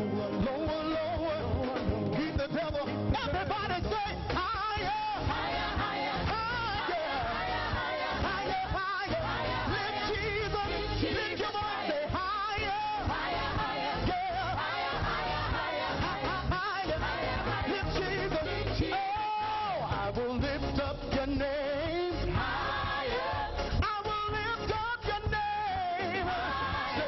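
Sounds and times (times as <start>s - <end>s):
band with beat and bass: 0.0s - 27.0s
voices singing with vibrato: 4.5s - 20.2s, 22.2s - 23.8s, 25.4s - 27.0s.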